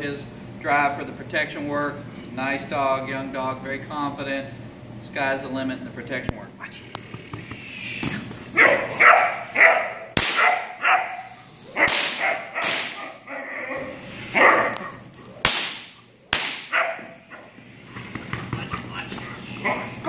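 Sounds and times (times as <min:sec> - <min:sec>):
dog barking: 0:08.6 - 0:13.3, 0:14.4 - 0:15.0, 0:16.7 - 0:17.6
sharp cracks: 0:10.1 - 0:10.8, 0:11.8 - 0:13.3, 0:14.2 - 0:19.0.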